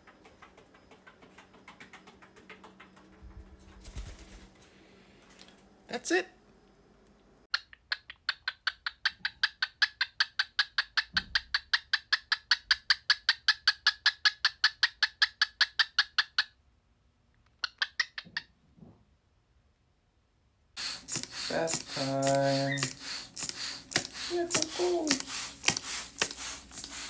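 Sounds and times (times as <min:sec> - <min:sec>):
cockatiel chirping: 0:20.8 - 0:27.0.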